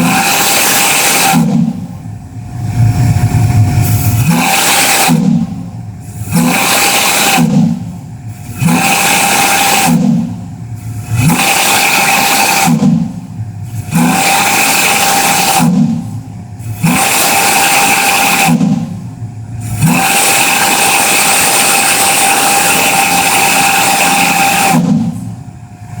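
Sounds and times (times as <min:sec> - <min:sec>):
hiss: 0:00.0 - 0:01.7, 0:03.8 - 0:10.2, 0:10.8 - 0:19.0, 0:19.6 - 0:26.0.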